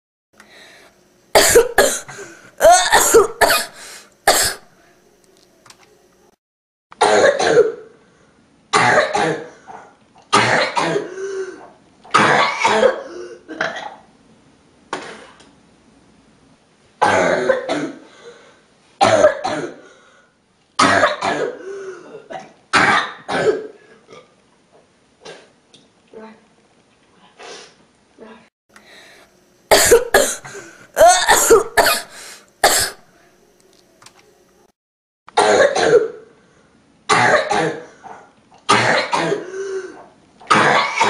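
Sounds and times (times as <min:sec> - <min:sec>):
person clearing throat: 0:01.4 - 0:04.6, 0:07.0 - 0:07.8, 0:08.8 - 0:14.0, 0:17.0 - 0:18.1, 0:20.8 - 0:24.3, 0:29.7 - 0:33.0, 0:35.4 - 0:36.2, 0:37.1 - 0:41.0
person coughing: 0:01.4 - 0:04.6, 0:07.0 - 0:07.8, 0:08.8 - 0:09.8, 0:10.4 - 0:14.0, 0:17.0 - 0:18.1, 0:19.0 - 0:19.9, 0:20.8 - 0:23.8, 0:29.7 - 0:33.0, 0:35.4 - 0:36.2, 0:37.1 - 0:38.0, 0:38.7 - 0:41.0.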